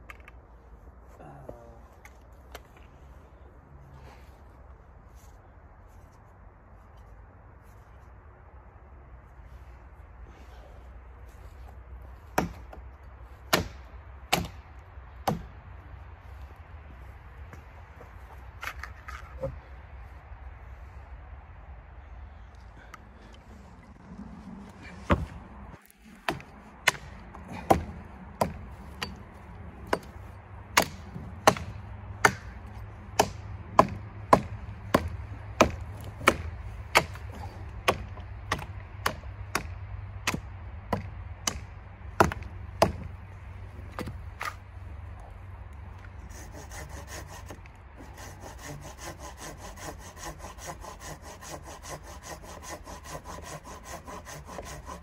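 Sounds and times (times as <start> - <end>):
hand saw cutting wood: 46.2 - 55.0.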